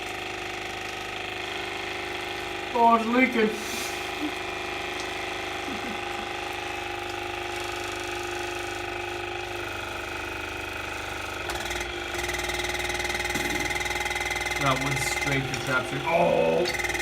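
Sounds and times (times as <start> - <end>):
water flosser pump buzzing: 0.0 - 17.0.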